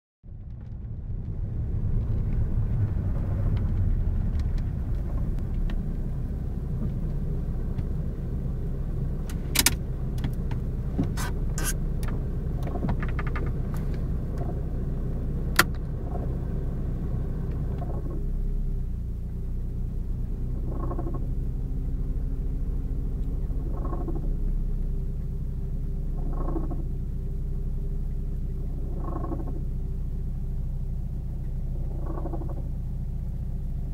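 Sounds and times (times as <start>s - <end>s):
car engine running: 0.2s - 33.9s
strange engine compartment noise: 0.2s - 33.9s
sharp clicks: 9.3s - 10.4s.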